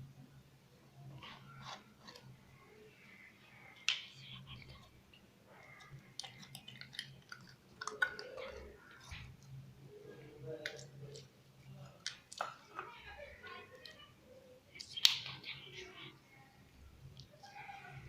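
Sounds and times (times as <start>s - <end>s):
faint low hum: 0.0s - 18.0s
slime squishing: 1.1s - 14.1s
small crackling pops and clicks: 11.9s - 12.9s, 14.7s - 15.5s.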